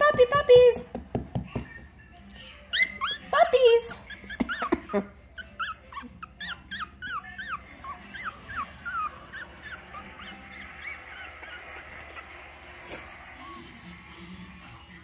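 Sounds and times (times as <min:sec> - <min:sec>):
puppies whimpering and yelping: 0:02.5 - 0:13.9.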